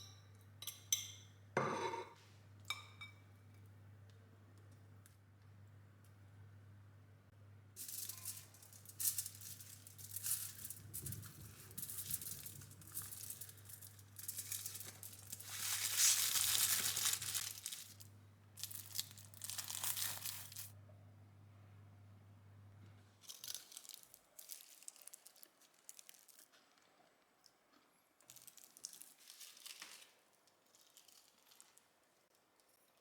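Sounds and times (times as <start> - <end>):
packaging crinkling and rustling: 7.8 - 20.7, 23.2 - 26.8, 28.3 - 32.0.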